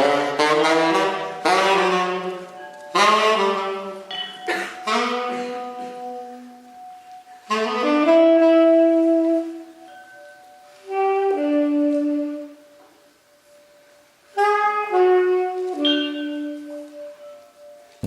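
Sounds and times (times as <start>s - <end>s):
improvised saxophone-like music: 0.0s - 18.0s.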